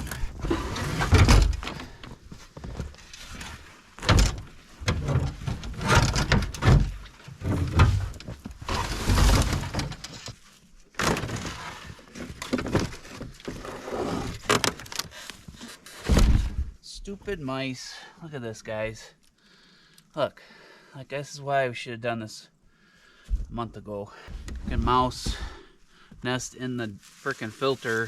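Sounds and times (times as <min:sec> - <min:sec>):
parts clunking and scraping: 0:00.0 - 0:16.8, 0:23.2 - 0:26.3.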